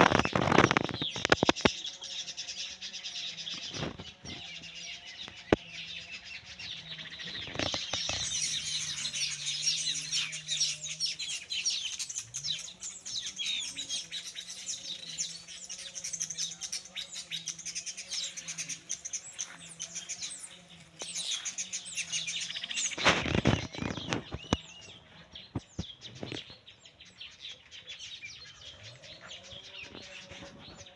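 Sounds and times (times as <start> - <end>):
birds chirping: 0.0 - 30.9.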